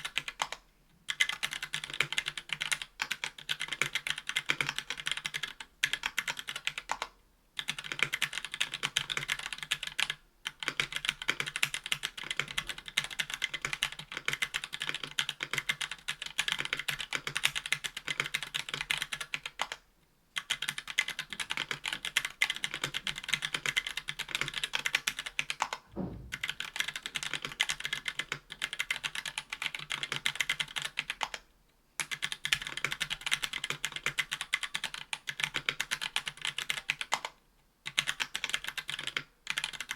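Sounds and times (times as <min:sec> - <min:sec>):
fast typing on mechanical keyboard: 0:00.0 - 0:19.8, 0:20.4 - 0:25.8, 0:26.4 - 0:31.4, 0:32.0 - 0:39.9.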